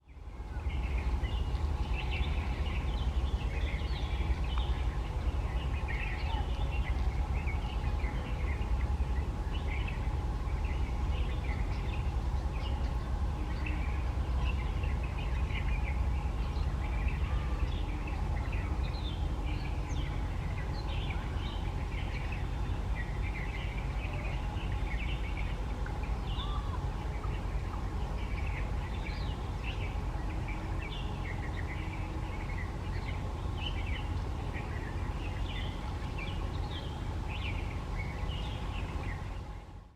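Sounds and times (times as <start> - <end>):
low rumble: 0.2 - 17.0.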